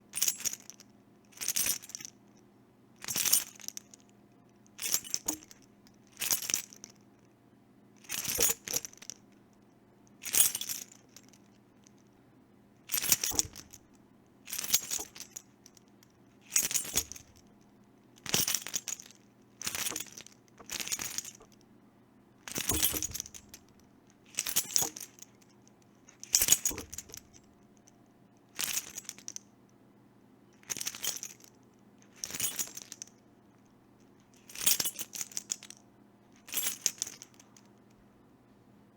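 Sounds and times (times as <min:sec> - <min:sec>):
keys jangling: 0:03.1 - 0:03.8, 0:04.8 - 0:05.6, 0:08.1 - 0:09.2, 0:10.3 - 0:11.3, 0:12.9 - 0:13.8, 0:14.5 - 0:15.4, 0:16.5 - 0:17.4, 0:18.3 - 0:21.5, 0:22.5 - 0:25.3, 0:26.2 - 0:27.5, 0:28.6 - 0:29.4, 0:30.6 - 0:31.5, 0:32.1 - 0:33.1, 0:34.4 - 0:35.8, 0:36.5 - 0:37.4.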